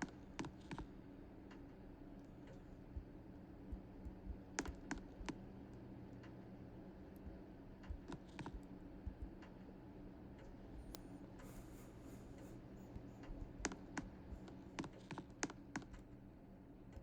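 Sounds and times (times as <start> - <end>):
ceiling fan motor humming: 0.0 - 17.0
light clicks: 3.7 - 6.5, 7.1 - 9.7.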